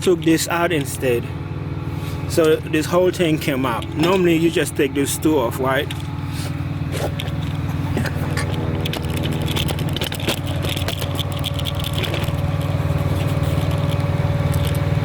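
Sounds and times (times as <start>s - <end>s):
engine idling: 0.0s - 15.0s
metal brake parts clicking: 3.4s - 4.8s, 5.6s - 15.0s.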